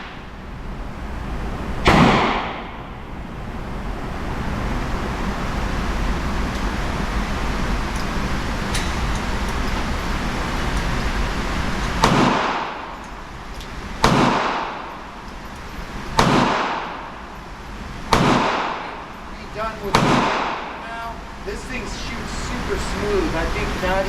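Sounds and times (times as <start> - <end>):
steady background rumble: 0.0 - 24.0
revolver gunshots with echo: 1.8 - 3.2, 12.0 - 13.0, 14.0 - 15.2, 16.1 - 17.3, 18.1 - 21.1.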